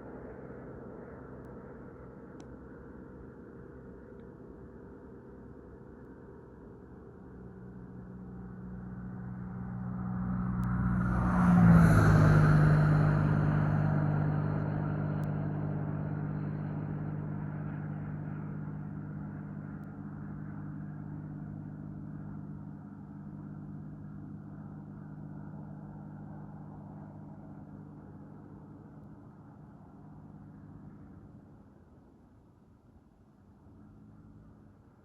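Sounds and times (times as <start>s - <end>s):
motor vehicle passing: 8.3s - 31.3s.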